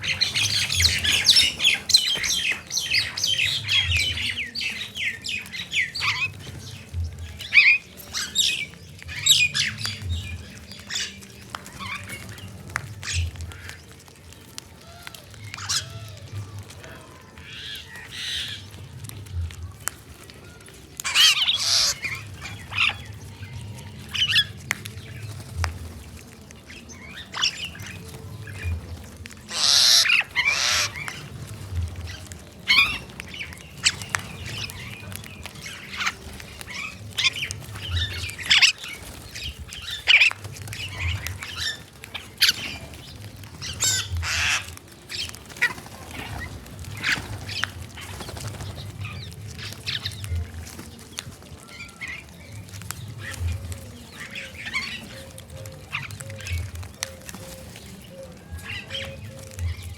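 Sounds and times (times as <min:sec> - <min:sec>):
crows squawking: 0:21.0 - 0:23.0, 0:29.5 - 0:31.6, 0:43.6 - 0:45.8.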